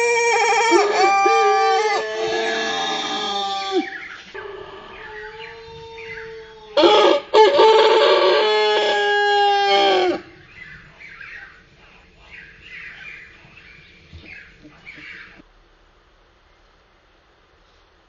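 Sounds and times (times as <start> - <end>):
slowed rooster crowing: 0.0 - 10.3.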